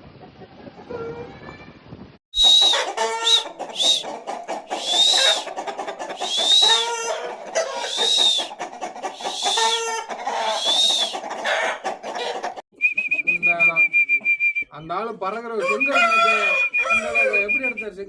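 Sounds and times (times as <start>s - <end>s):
chickens clucking: 2.4s - 13.6s, 15.3s - 17.8s
chickens calling: 2.4s - 18.0s.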